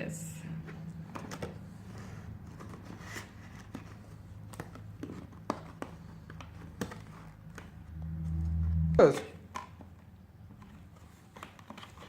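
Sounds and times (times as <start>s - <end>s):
packaging clicks and taps: 0.6s - 7.9s, 9.4s - 12.0s.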